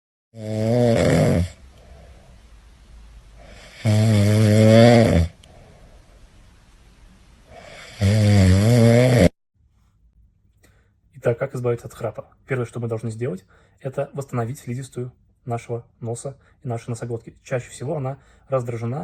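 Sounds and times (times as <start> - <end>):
person snoring loudly: 0.4 - 2.2, 3.4 - 5.8, 7.5 - 9.4
faint breathing: 1.5 - 8.2, 9.8 - 11.1, 13.4 - 13.8, 16.4 - 16.6, 18.2 - 18.6.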